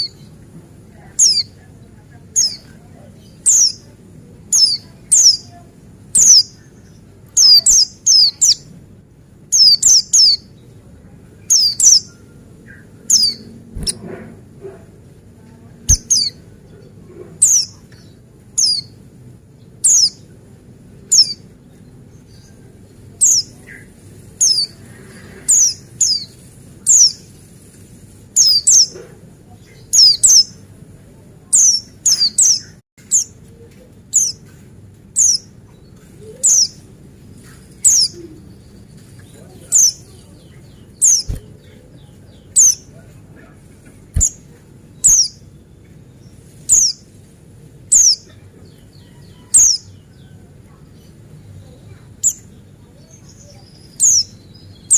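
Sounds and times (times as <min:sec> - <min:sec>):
bird high thin calls: 0:01.2 - 0:01.5, 0:03.4 - 0:03.8, 0:06.2 - 0:06.5, 0:15.9 - 0:16.4, 0:41.0 - 0:41.5, 0:42.6 - 0:42.9, 0:44.2 - 0:45.4, 0:47.9 - 0:48.4.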